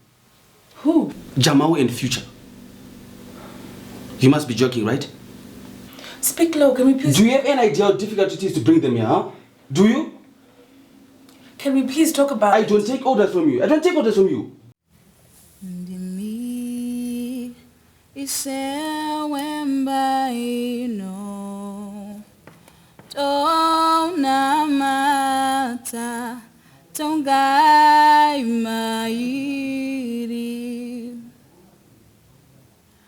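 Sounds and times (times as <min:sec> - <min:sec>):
woman singing unaccompanied: 0:05.3 - 0:07.3, 0:11.6 - 0:12.3, 0:15.6 - 0:22.3, 0:23.1 - 0:31.4.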